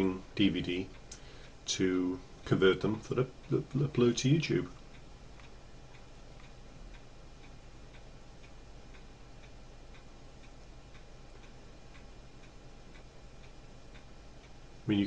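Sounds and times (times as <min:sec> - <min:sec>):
faint even ticking: 0:00.0 - 0:15.0
low steady hum: 0:00.0 - 0:15.0.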